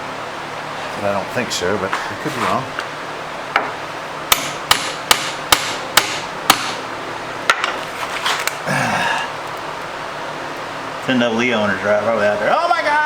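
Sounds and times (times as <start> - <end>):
hammer striking metal: 4.3 - 6.8.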